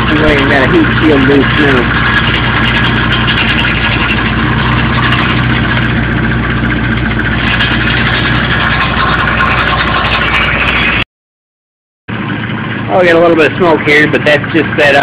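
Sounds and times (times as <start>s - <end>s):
car engine idling: 0.0s - 11.0s, 12.1s - 15.0s
exhaust heat shield rattling: 0.0s - 11.0s.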